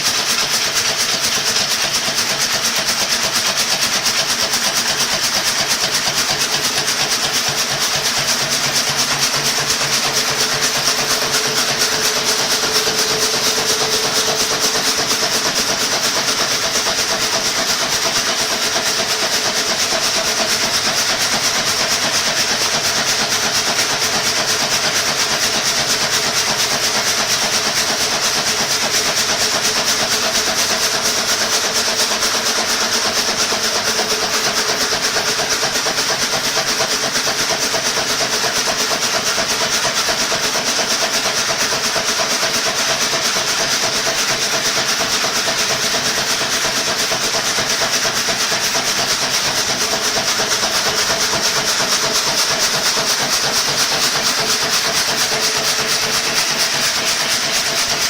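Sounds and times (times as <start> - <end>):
conveyor machinery hissing: 3.1 - 58.0
high machinery whine: 4.8 - 37.9
machinery hum: 8.8 - 20.8.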